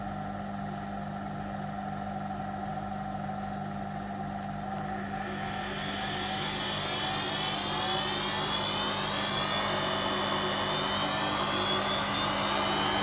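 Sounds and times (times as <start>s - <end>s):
washing machine motor hum: 0.0s - 13.0s
whine rising in pitch: 4.3s - 13.0s.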